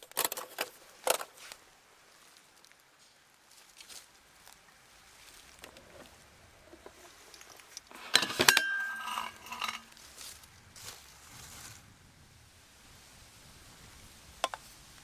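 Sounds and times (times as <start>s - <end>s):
metal cookware clanking: 7.9s - 9.9s.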